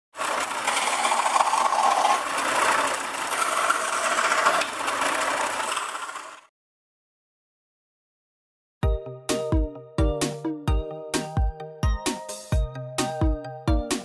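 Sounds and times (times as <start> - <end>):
bandsaw running with a rattle: 0.2 - 6.5.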